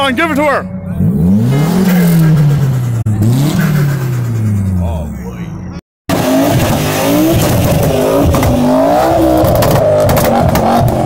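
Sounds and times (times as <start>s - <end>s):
car engine revving: 0.0s - 11.0s
exhaust pops: 6.1s - 8.7s, 9.3s - 11.0s.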